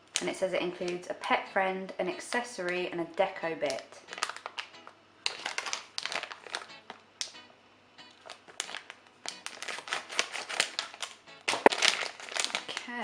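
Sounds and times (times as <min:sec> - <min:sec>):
plastic packet crinkling: 0:04.0 - 0:07.4, 0:08.1 - 0:13.0.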